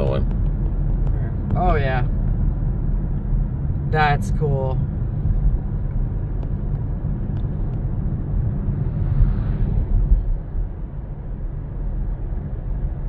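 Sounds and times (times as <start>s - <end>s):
car road rumble inside cabin: 0.0s - 13.0s
passing whoosh: 8.2s - 11.0s.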